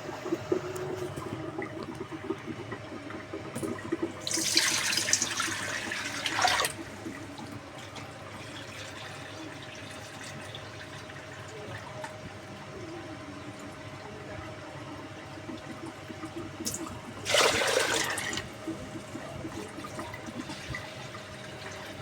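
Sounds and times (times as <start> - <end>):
water running: 0.0 - 12.0, 16.6 - 22.0.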